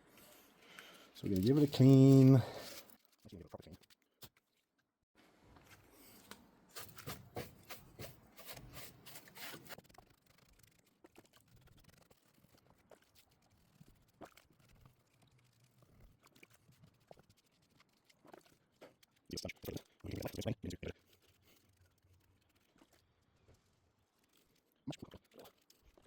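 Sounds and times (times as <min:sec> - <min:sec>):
scraping and rubbing plastic: 0:06.0 - 0:26.0.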